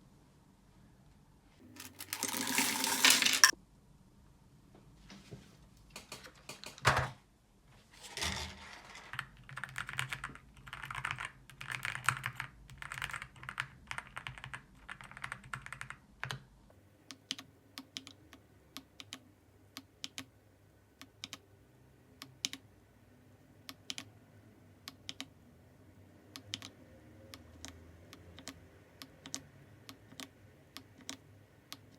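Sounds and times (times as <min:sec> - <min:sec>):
typing on mechanical keyboard: 0:05.9 - 0:06.8, 0:09.1 - 0:16.5, 0:26.3 - 0:26.7, 0:27.4 - 0:31.9.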